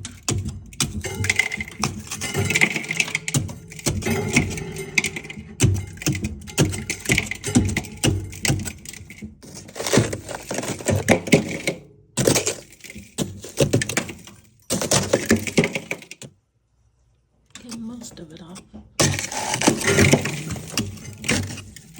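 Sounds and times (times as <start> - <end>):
wooden spoon scraping ice: 6.0 - 15.7, 19.0 - 21.9.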